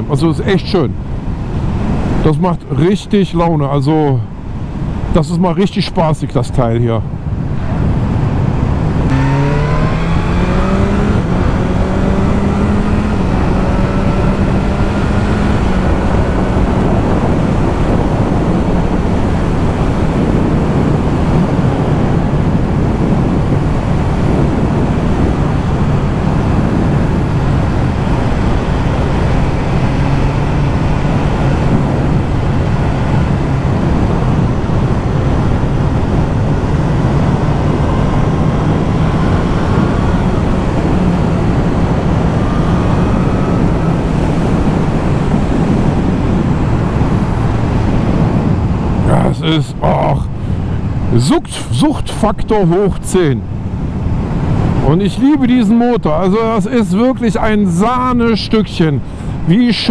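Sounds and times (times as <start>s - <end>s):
wind rush: 0.0s - 59.9s
motorcycle engine: 8.4s - 49.0s.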